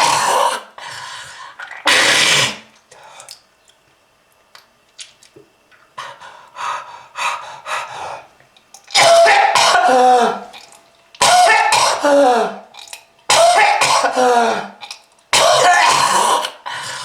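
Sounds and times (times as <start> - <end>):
person hacking cough: 9.0 - 10.4, 11.2 - 12.6, 13.3 - 14.7, 15.4 - 16.4.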